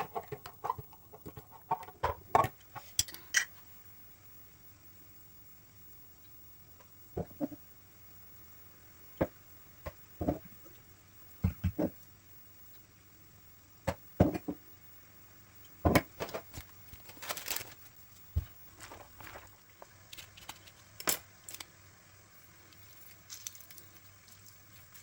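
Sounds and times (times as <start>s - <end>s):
objects being handled and set down: 15.8s - 21.7s.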